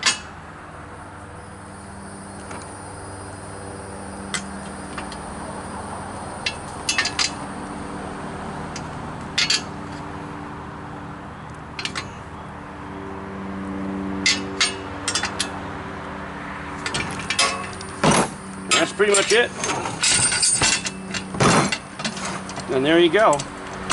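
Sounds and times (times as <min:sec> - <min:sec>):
wrenches clinking on metal: 0:00.0 - 0:00.3, 0:06.4 - 0:07.4, 0:08.7 - 0:10.0, 0:11.8 - 0:12.2, 0:14.2 - 0:15.6, 0:16.8 - 0:23.9
steady low hum: 0:00.0 - 0:10.6.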